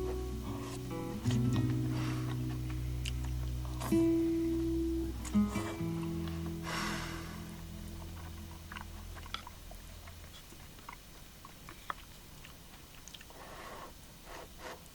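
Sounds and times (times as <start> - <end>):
acoustic guitar music: 0.0 - 10.3.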